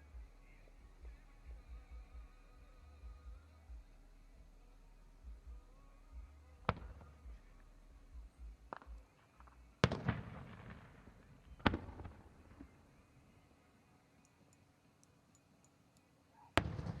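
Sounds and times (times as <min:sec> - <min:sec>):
fireworks bangs: 0:06.6 - 0:07.5, 0:09.8 - 0:12.8, 0:16.6 - 0:17.0
fireworks crackling: 0:06.6 - 0:13.1, 0:16.6 - 0:17.0.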